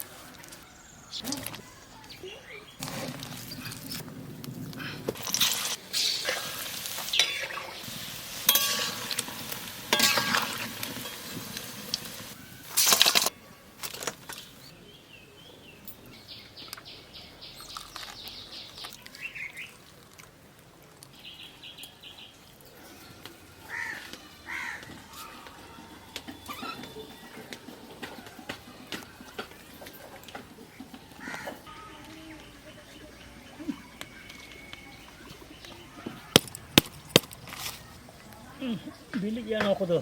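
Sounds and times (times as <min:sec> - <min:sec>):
birds chirping: 0:00.0 - 0:05.1, 0:13.3 - 0:19.9, 0:21.1 - 0:40.0
stirring and scraping in pan: 0:02.8 - 0:13.3
frying sizzle: 0:04.8 - 0:13.3.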